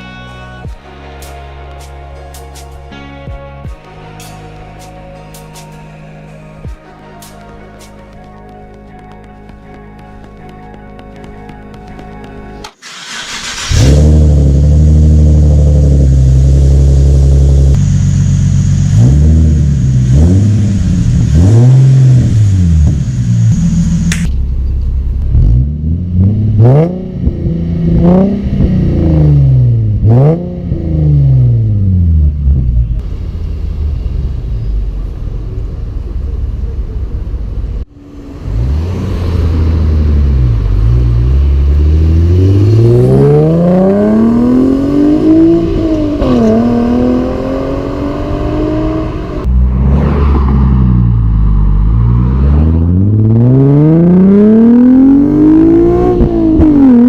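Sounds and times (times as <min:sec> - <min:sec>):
loud car exhaust revving: 0:13.0 - 0:24.3, 0:25.0 - 0:35.0, 0:38.0 - 0:57.0.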